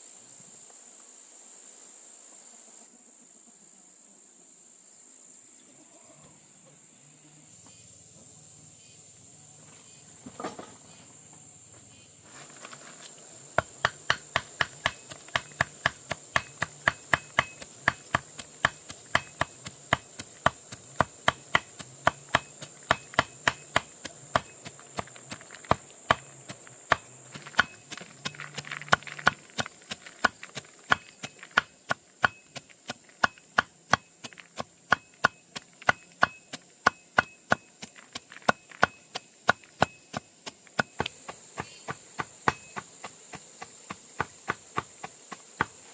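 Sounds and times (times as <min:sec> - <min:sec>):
high-pitched insect drone: 0:10.8 - 0:45.9
steady chopping blows: 0:13.5 - 0:45.9.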